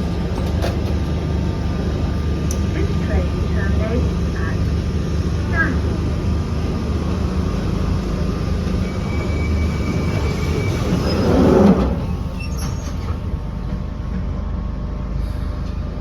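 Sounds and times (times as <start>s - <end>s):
train equipment humming: 0.0s - 16.0s
rushing noise: 4.1s - 13.5s.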